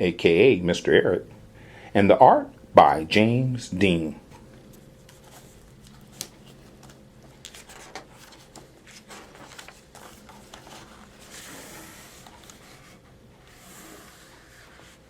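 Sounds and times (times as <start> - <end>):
book pages rustling: 4.3 - 15.0
book pages clicking and tapping: 5.1 - 12.9.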